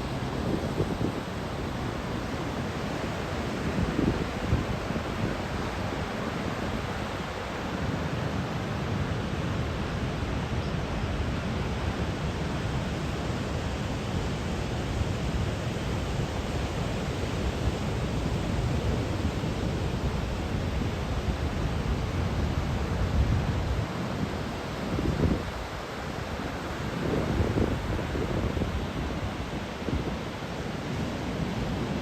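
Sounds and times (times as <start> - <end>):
wind buffeting microphone: 0.0 - 7.0.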